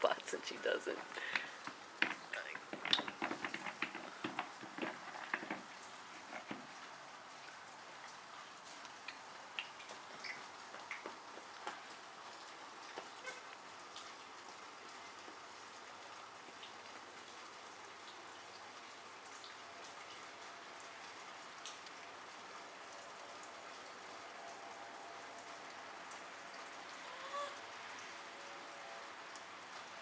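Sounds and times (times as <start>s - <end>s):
light rain hiss: 0.0s - 30.0s
raindrops ticking: 0.0s - 30.0s.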